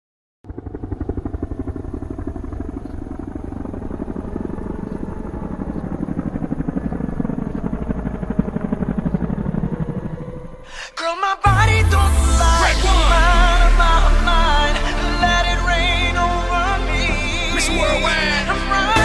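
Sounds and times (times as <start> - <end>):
motorcycle engine running: 0.5 - 10.6.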